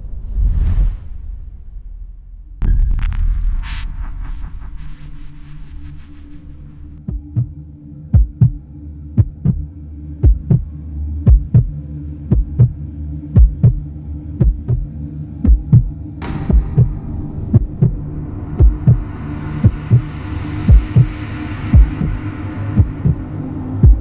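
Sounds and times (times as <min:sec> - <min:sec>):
low drone: 0:00.0 - 0:24.0
heartbeat thumps: 0:07.0 - 0:08.6, 0:09.2 - 0:10.7, 0:11.3 - 0:11.7, 0:12.3 - 0:12.8, 0:13.4 - 0:13.8, 0:14.4 - 0:15.9, 0:16.5 - 0:18.0, 0:18.6 - 0:19.0, 0:19.6 - 0:20.1, 0:20.7 - 0:21.1, 0:21.7 - 0:22.2, 0:22.8 - 0:23.2.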